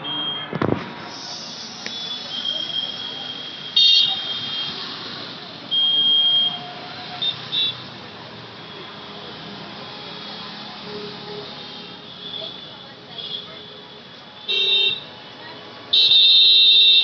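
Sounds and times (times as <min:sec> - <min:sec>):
traffic hum: 0:00.0 - 0:17.0
vehicle horns honking: 0:01.9 - 0:04.8, 0:05.8 - 0:07.9, 0:10.9 - 0:13.8, 0:14.4 - 0:15.1, 0:15.9 - 0:17.0.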